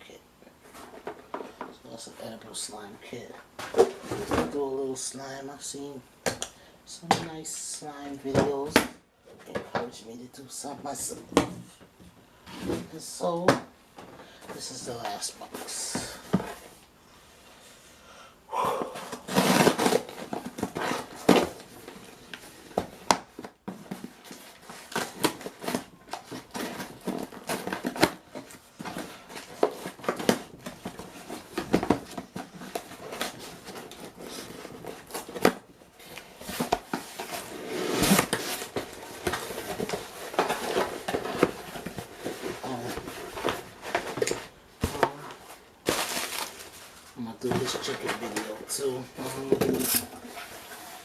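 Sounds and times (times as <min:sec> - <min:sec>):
cardboard box packaging rustling: 0:18.8 - 0:51.0.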